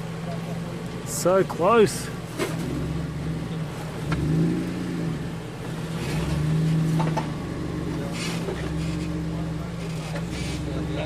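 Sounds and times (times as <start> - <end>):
engine revving under load: 2.2 - 11.0.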